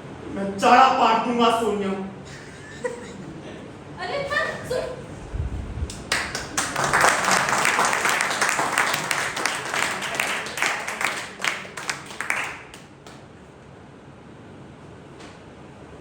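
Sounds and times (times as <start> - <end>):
audience applauding: 6.1 - 13.2.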